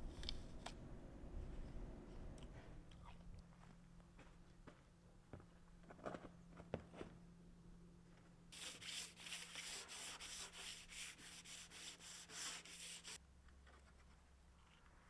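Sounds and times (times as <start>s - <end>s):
sandpaper rubbing: 8.6s - 13.2s.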